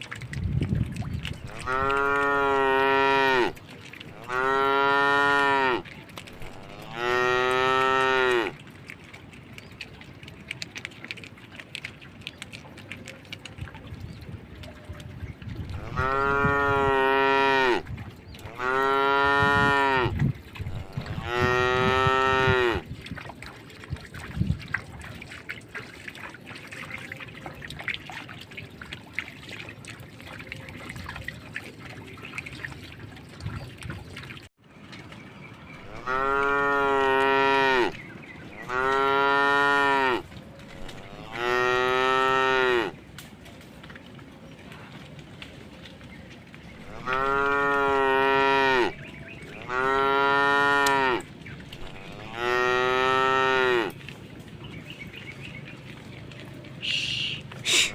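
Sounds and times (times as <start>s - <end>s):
cow mooing: 1.5s - 5.8s, 6.4s - 8.6s, 15.8s - 17.8s, 18.4s - 22.8s, 35.8s - 38.0s, 38.6s - 40.2s, 40.8s - 43.0s, 46.8s - 49.0s, 49.6s - 51.2s, 51.8s - 54.0s.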